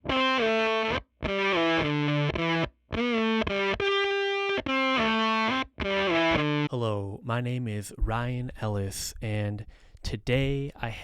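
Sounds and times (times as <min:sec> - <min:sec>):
distorted electric guitar riffs: 0:00.0 - 0:06.7.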